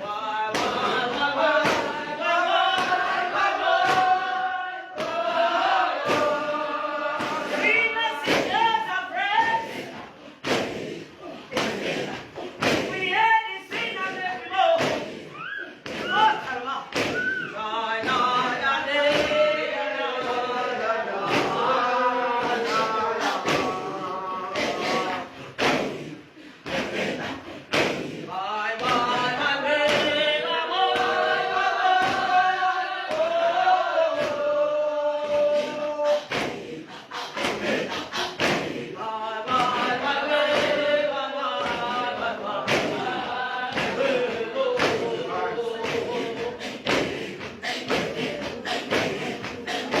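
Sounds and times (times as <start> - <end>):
voices chanting a hymn: 0.0 - 50.0
drum thumps: 0.5 - 2.0, 3.8 - 4.2, 6.0 - 6.5, 11.5 - 15.2, 15.9 - 21.7, 22.3 - 27.0, 27.7 - 30.2, 31.0 - 32.4, 35.2 - 36.7, 37.3 - 41.0, 41.6 - 50.0.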